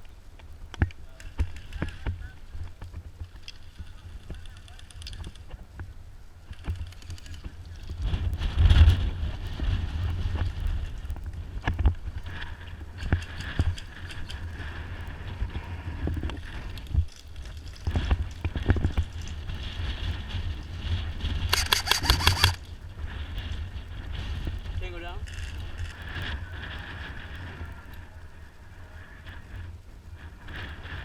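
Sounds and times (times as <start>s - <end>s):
wind rumble on microphone: 0.0s - 31.0s
fast sharp clicks: 21.3s - 22.7s.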